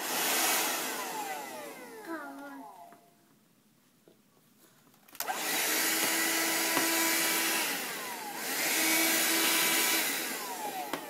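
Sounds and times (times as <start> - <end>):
vacuum cleaner whirring: 0.0 - 2.7, 5.2 - 11.0.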